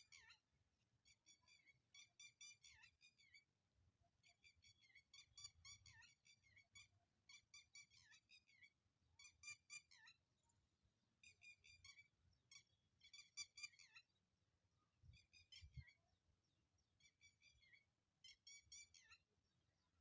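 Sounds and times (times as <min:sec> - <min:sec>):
faint bird chirping: 0:00.0 - 0:20.0.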